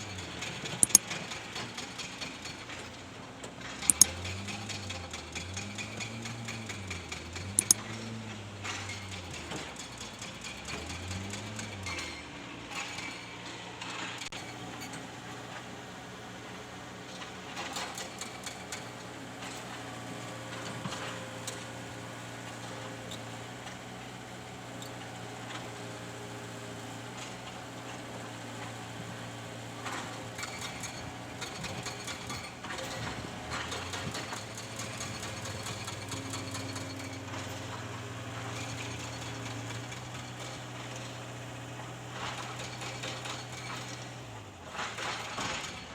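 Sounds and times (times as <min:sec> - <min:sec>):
excavator engine running: 0:00.0 - 0:45.9
metallic clanks and knocks: 0:00.8 - 0:01.0.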